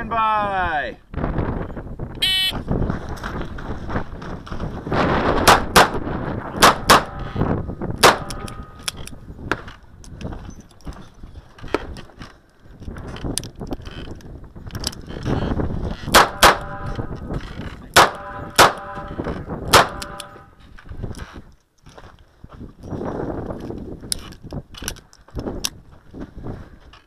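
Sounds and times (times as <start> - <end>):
handgun shots: 5.4 - 6.0, 6.6 - 7.3, 8.0 - 8.8, 16.1 - 16.9, 18.0 - 20.4.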